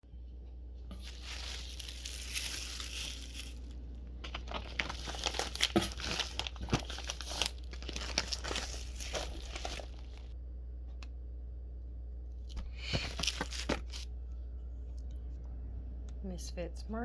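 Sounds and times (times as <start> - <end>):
packaging crinkling: 0.9 - 10.4, 12.8 - 14.1
cardboard box tearing: 4.5 - 10.2.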